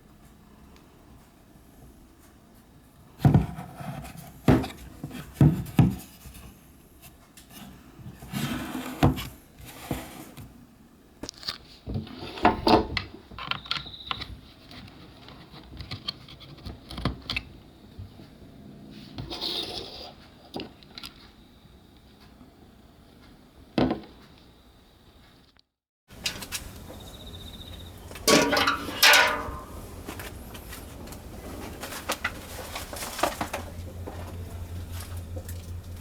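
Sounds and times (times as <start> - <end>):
scraping and rubbing: 28.2 - 36.0.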